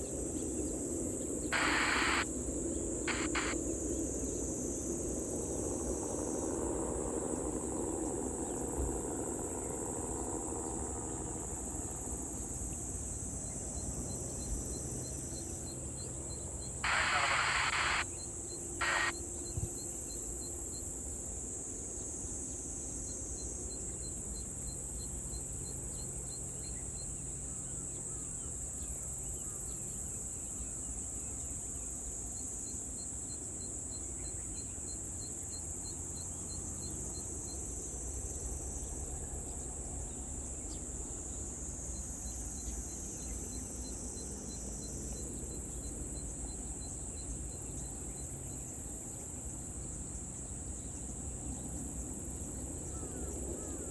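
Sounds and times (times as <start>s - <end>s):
insects shrilling drone: 0.8s - 21.2s
insect chirps: 1.1s - 10.5s, 11.7s - 21.3s, 40.4s - 49.7s.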